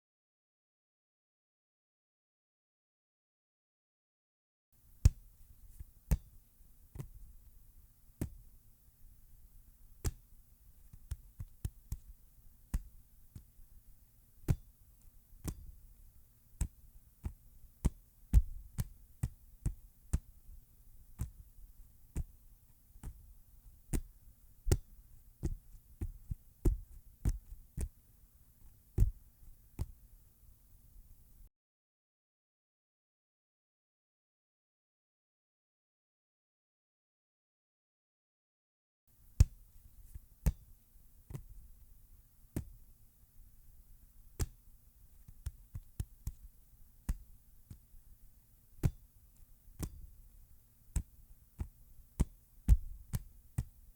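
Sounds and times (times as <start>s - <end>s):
hand slapping a football: 4.9s - 7.6s, 8.2s - 8.5s, 9.8s - 13.8s, 14.4s - 15.8s, 16.6s - 28.0s, 28.6s - 30.1s, 39.2s - 42.9s, 43.7s - 48.0s, 48.7s - 50.2s, 50.9s - 53.9s.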